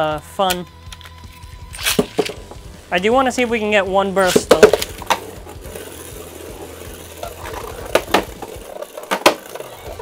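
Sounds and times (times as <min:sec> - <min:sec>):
spinning tops whirring: 0:04.2 - 0:10.0.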